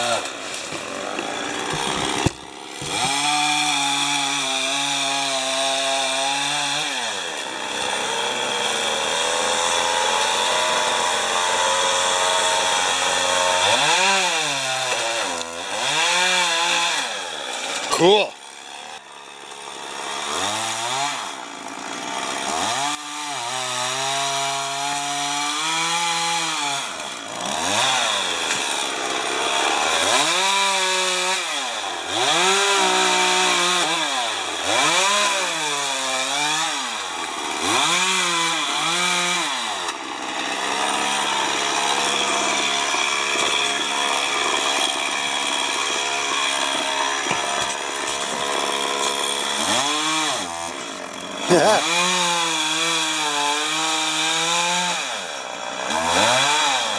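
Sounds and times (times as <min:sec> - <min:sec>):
chainsaw revving: 0:00.0 - 0:56.9.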